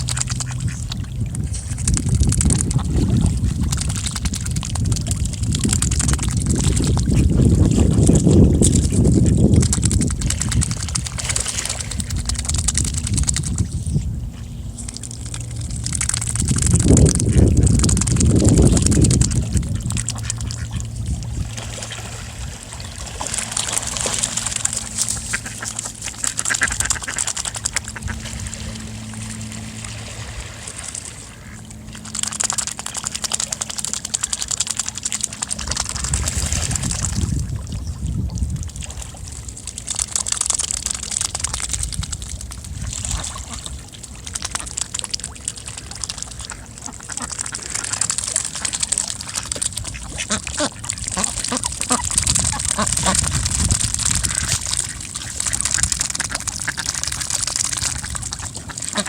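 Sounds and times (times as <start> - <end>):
swans calling: 22.7 - 29.9.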